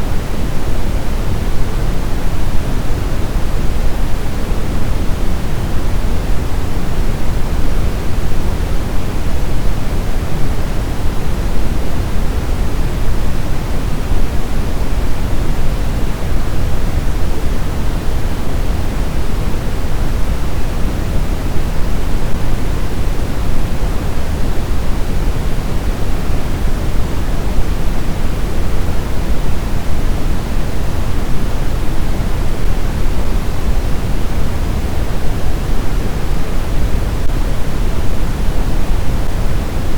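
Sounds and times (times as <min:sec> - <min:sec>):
steady white noise hiss: 0:00.0 - 0:39.9.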